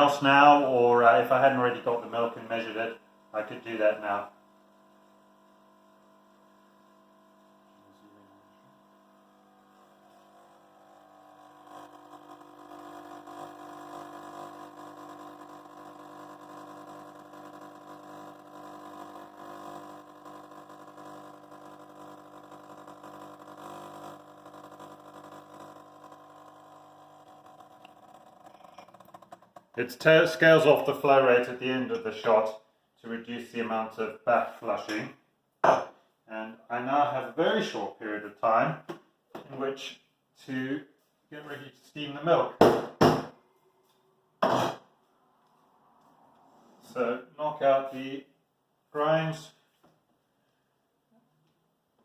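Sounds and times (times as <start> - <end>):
espresso machine pump humming: 1.4 - 32.1.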